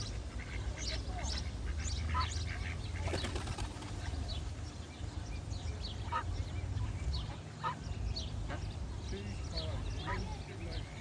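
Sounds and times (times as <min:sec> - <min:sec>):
duck calls: 0:00.0 - 0:03.2, 0:06.0 - 0:06.4, 0:07.2 - 0:07.8, 0:10.0 - 0:10.4
duckling peeping: 0:00.0 - 0:11.0.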